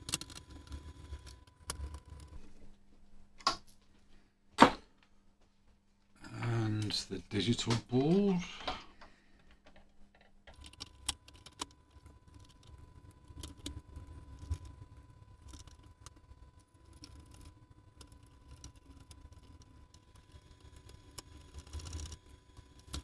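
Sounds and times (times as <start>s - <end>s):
small clicks and taps of parts: 0.0s - 2.6s, 8.6s - 23.0s.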